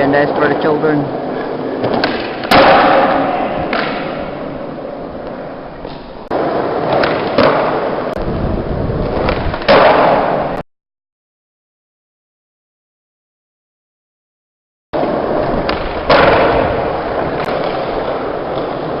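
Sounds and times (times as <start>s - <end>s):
skateboard wheels rolling: 0.0s - 10.6s, 15.0s - 19.0s
skateboard striking ground: 1.3s - 10.6s, 15.0s - 19.0s.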